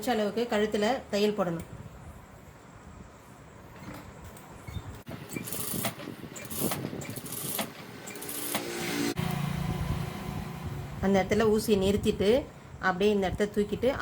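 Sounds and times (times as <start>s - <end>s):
sewing machine stitching: 5.1s - 9.1s.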